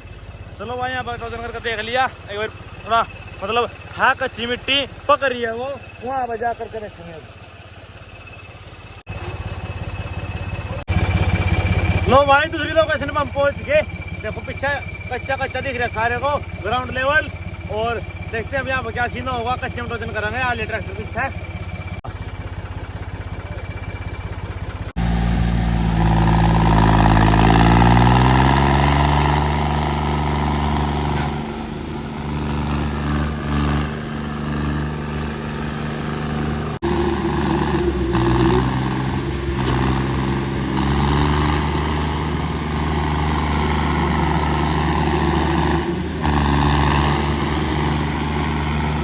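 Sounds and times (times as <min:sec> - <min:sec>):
diesel tractor engine revving: 0:00.0 - 0:49.0.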